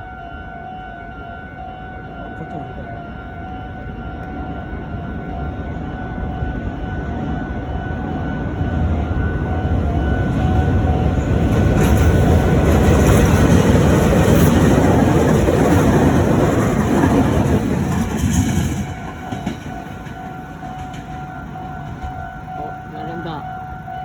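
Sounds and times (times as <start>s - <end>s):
electric train passing: 0.0s - 24.0s
level crossing warning bell: 0.0s - 24.0s.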